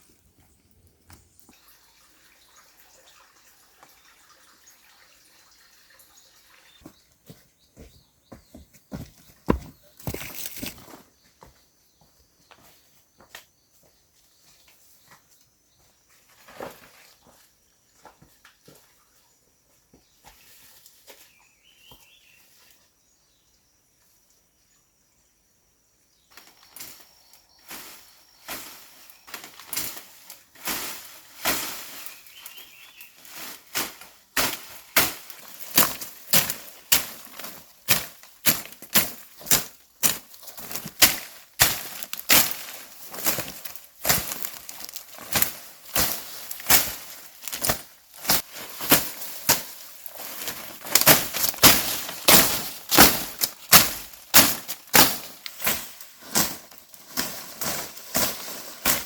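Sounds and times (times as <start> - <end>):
blade chopping into wood: 51.0 - 55.8.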